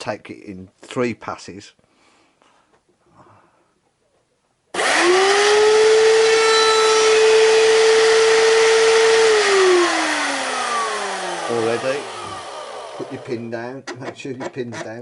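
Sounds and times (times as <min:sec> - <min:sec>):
router motor whining: 0:04.8 - 0:13.6.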